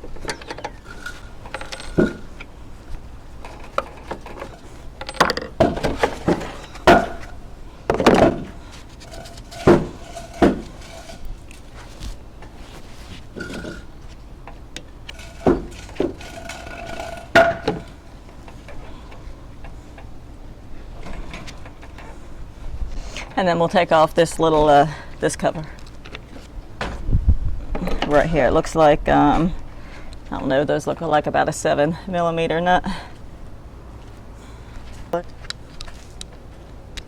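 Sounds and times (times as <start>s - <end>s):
metal knocks and clinks: 0.0s - 2.5s, 3.4s - 11.4s, 15.1s - 18.1s.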